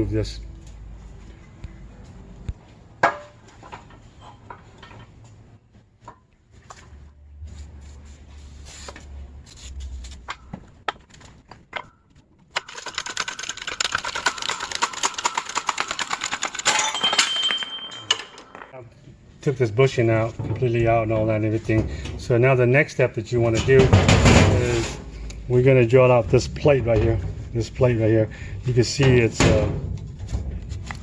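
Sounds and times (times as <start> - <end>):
fast metallic rattle: 12.6 - 18.3
metal tool knocks and clinks: 16.6 - 18.8.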